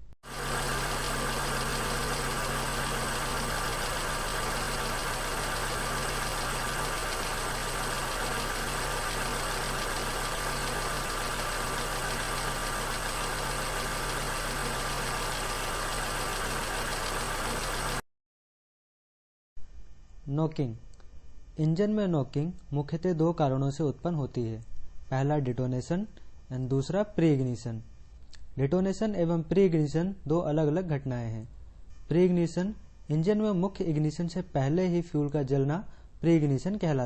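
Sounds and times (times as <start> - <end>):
engine knocking: 0.2 - 18.0.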